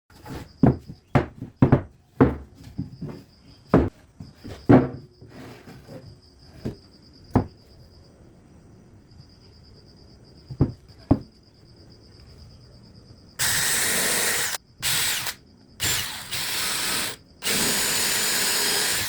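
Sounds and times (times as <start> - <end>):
wooden knocks and clunks: 0.1 - 7.6, 10.5 - 11.4.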